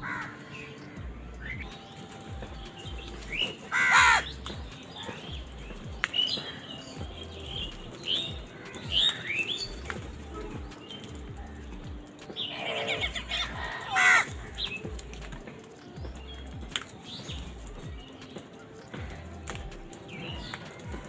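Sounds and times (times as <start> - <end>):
crows cawing: 0.0 - 1.0, 3.5 - 14.9.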